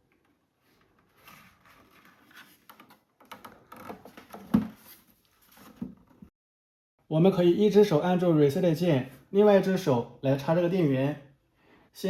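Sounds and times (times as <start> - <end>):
handling rustling and taps: 0.1 - 6.3.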